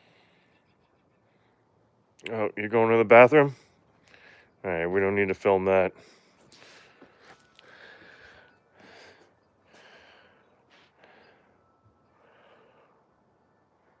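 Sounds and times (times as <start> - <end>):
faint breathing: 0.0 - 1.9, 3.6 - 4.6, 6.0 - 14.0.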